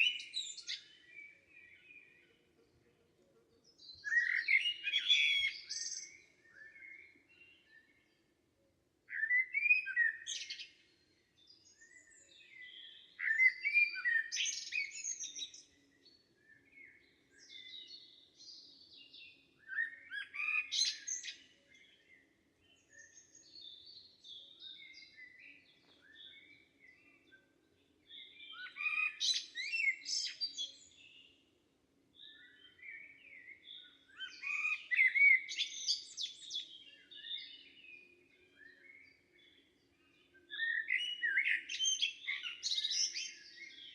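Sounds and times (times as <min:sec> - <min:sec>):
quiet bird chirps: 0:00.0 - 0:43.9
songbirds warbling: 0:03.7 - 0:07.7.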